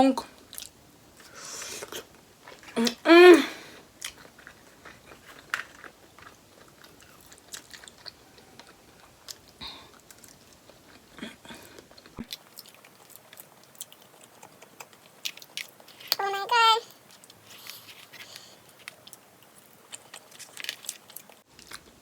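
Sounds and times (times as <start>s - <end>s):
person chewing: 3.8s - 16.2s, 17.0s - 22.0s.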